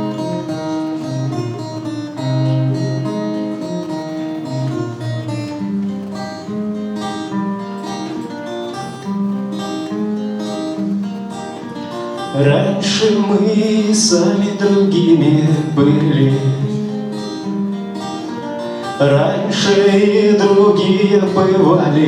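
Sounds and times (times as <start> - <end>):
acoustic guitar playing: 0.0 - 22.0
person singing: 12.3 - 17.0, 19.0 - 22.0.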